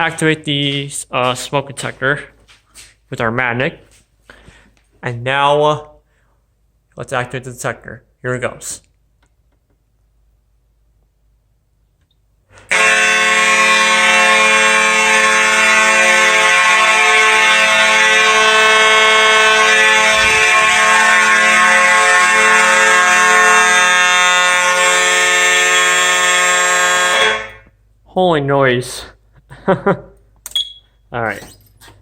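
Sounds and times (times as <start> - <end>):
fire alarm horns blaring: 0.0 - 0.5, 12.6 - 27.8.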